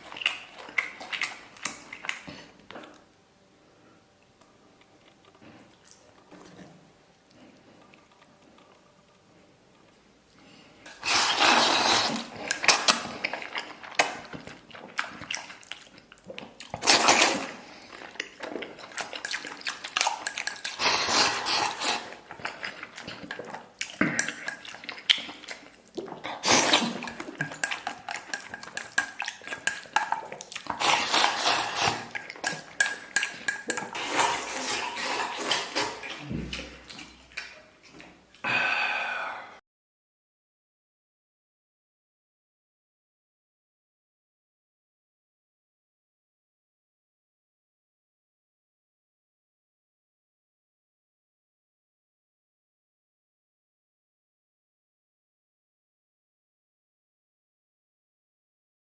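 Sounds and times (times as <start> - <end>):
dishes and cutlery clattering: 26.7 - 30.2, 30.8 - 36.3.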